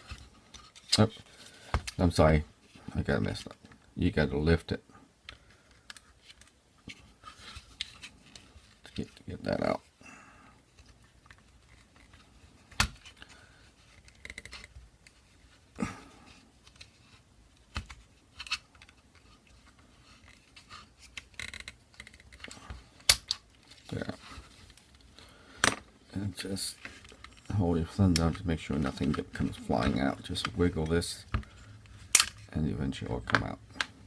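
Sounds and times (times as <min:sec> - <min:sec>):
gun parts clicking and scraping: 0:26.8 - 0:32.5.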